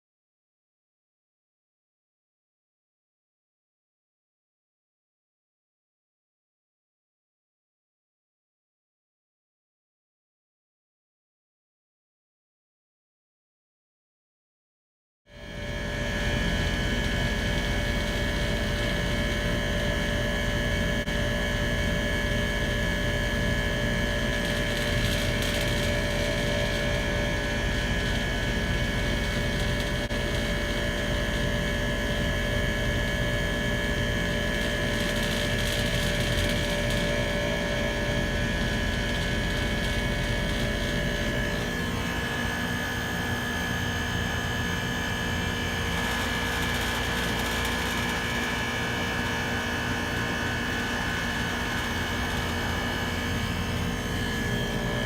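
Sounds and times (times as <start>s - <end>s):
steady whining tones: 15.4s - 43.2s, 45.9s - 55.0s
machine rumbling: 15.5s - 42.3s, 50.8s - 55.0s.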